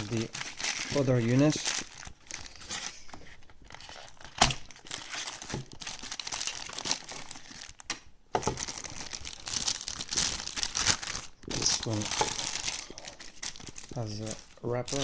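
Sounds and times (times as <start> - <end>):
packaging wrapper crinkling: 0.0 - 15.0.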